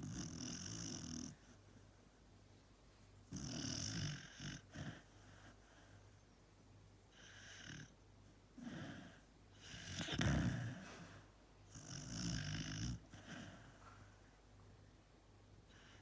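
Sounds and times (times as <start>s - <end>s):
dog snoring: 0.0s - 1.8s, 3.3s - 6.0s, 7.1s - 8.0s, 8.6s - 14.2s.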